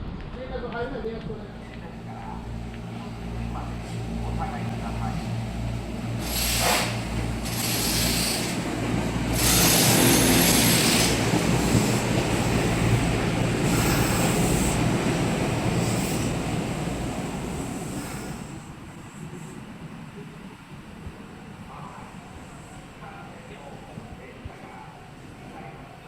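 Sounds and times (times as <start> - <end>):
electric train passing: 0.6 - 24.2.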